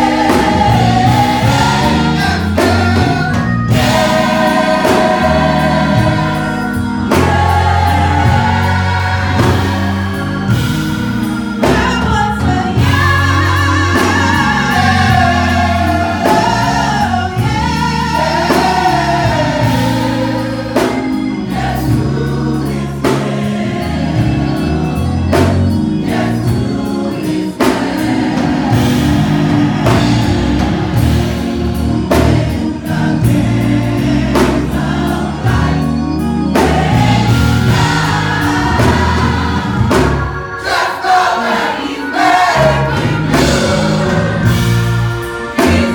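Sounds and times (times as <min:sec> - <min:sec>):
band with bass and drums: 0:00.0 - 0:45.9
gospel choir singing: 0:00.0 - 0:45.9.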